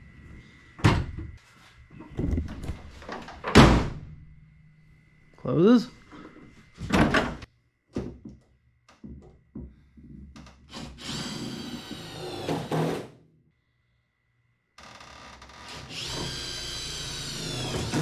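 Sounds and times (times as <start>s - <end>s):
cordless drill running: 10.7s - 12.7s, 15.7s - 18.0s.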